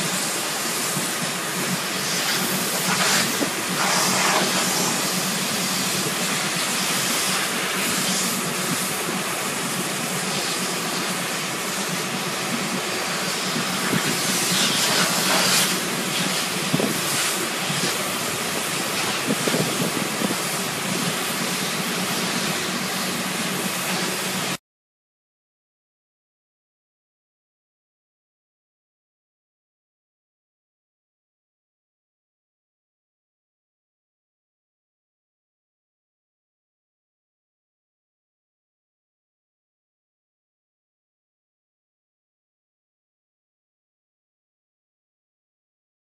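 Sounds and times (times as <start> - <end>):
combine harvester hiss and hum: 0.0 - 24.6.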